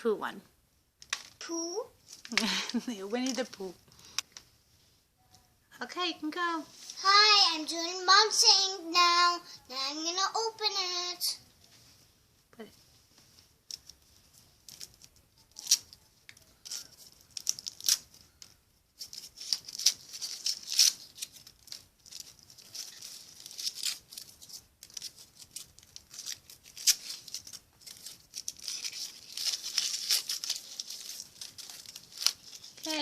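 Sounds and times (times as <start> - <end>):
foil wrapper crinkling and tearing: 13.7 - 33.0.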